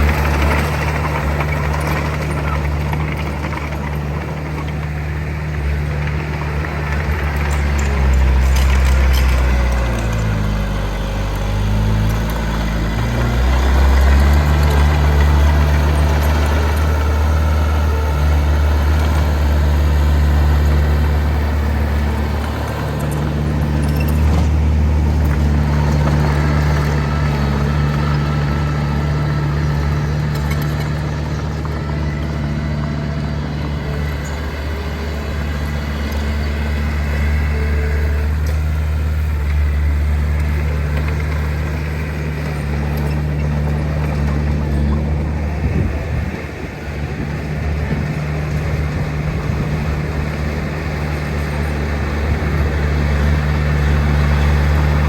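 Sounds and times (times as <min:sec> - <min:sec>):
heavy diesel engine running: 0:00.0 - 0:55.0.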